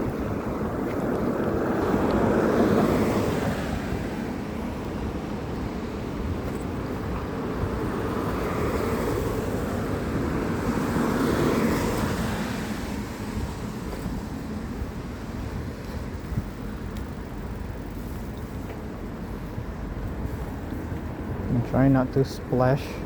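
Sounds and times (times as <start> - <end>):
wind buffeting microphone: 0.0 - 22.6.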